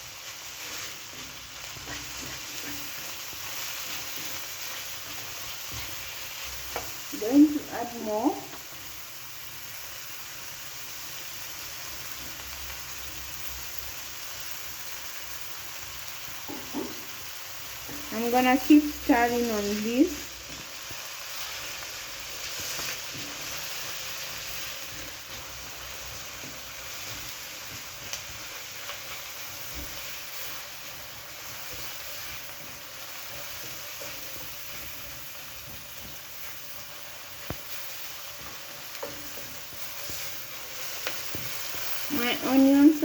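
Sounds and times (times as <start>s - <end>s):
onions sizzling in oil: 0.0s - 43.0s
spoon scraping pan: 0.6s - 6.1s.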